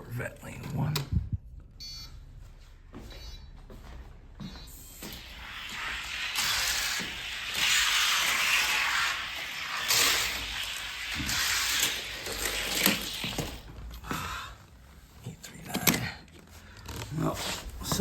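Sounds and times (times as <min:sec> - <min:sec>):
toy cars rolling on track: 0:05.1 - 0:13.7.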